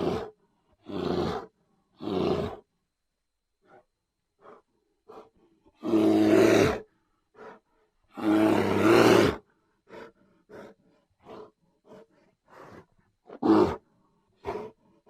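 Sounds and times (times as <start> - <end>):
lion grunting: 0.0 - 2.6, 8.2 - 14.8
lion roaring: 0.0 - 2.6.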